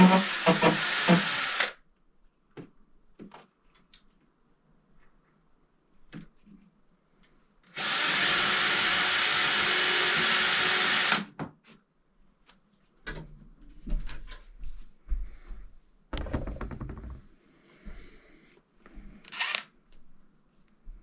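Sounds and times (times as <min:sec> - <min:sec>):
power drill whining: 0:00.0 - 0:01.8, 0:07.7 - 0:11.3, 0:19.3 - 0:19.6
knocks and handling noises: 0:16.2 - 0:17.4.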